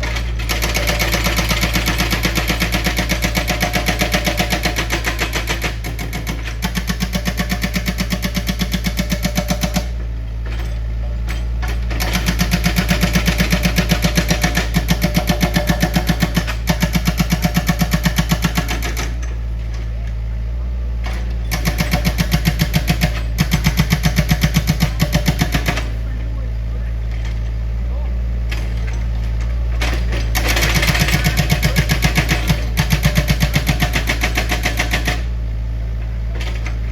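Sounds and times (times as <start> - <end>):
heavy machinery rapid knocking: 0.0 - 10.0, 10.6 - 19.2, 21.4 - 26.1, 29.8 - 35.3.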